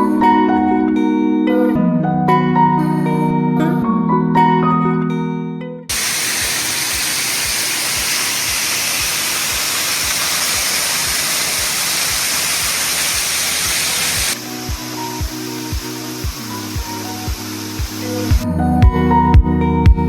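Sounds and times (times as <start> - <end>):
waterfall rushing: 5.9 - 18.4
background music beat: 7.0 - 20.0.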